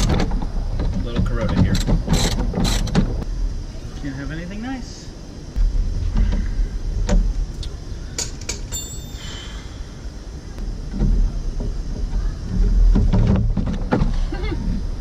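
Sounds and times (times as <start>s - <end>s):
low rumble: 0.0s - 8.2s.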